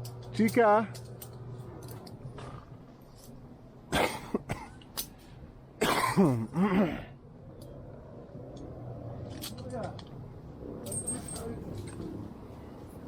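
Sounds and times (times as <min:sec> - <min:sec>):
person coughing: 0:03.9 - 0:04.8, 0:05.8 - 0:07.1.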